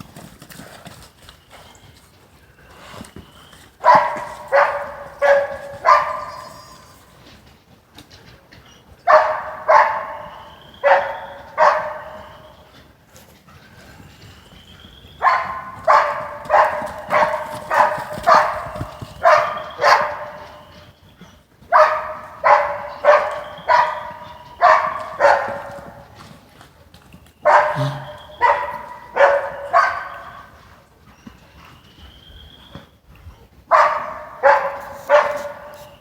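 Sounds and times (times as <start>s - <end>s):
dog barking: 3.8s - 6.8s, 9.1s - 12.4s, 15.2s - 20.6s, 21.7s - 26.0s, 27.4s - 30.6s, 33.7s - 36.0s.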